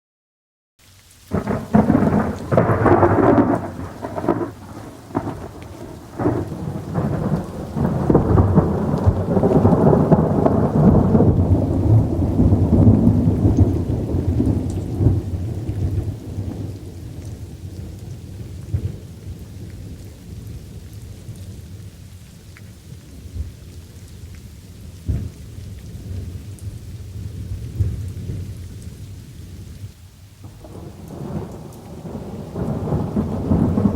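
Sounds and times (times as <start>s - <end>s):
light rain pattering: 0.8s - 33.9s
sharp thunder cracks: 1.3s - 17.9s, 25.1s - 25.4s, 30.4s - 33.9s
thunder rolling and crackling: 1.3s - 21.8s, 24.9s - 33.9s.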